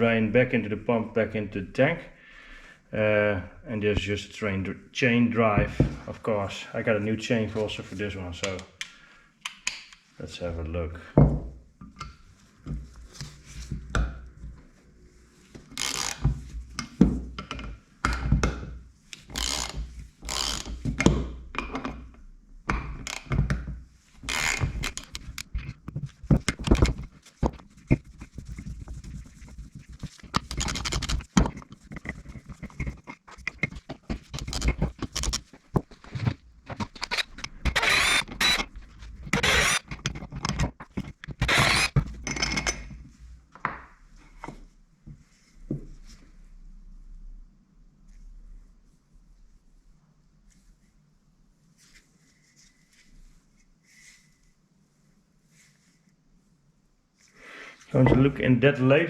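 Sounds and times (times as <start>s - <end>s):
metal tools knocking and scraping: 30.3s - 42.9s.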